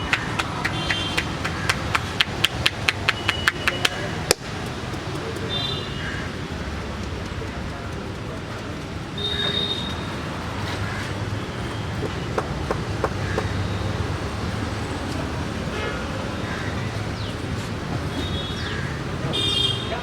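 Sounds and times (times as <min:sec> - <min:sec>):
street traffic hum: 0:00.0 - 0:20.0
sharp clicks: 0:00.1 - 0:05.5.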